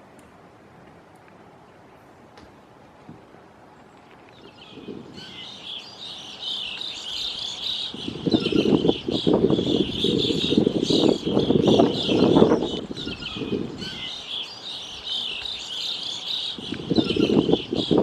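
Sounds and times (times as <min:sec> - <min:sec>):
birds chirping: 0:03.7 - 0:18.0.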